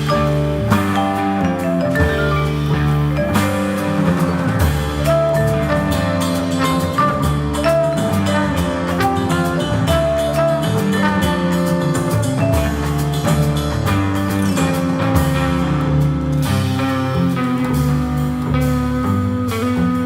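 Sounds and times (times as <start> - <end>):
ringing vibraphone notes: 0.0 - 15.4
live jazz band playing: 0.0 - 20.0.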